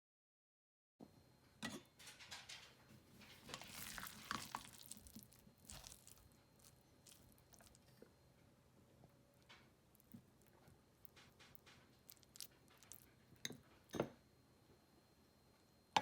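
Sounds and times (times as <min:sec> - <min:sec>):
crinkling of food preparation: 0:02.0 - 0:08.2, 0:09.4 - 0:14.0.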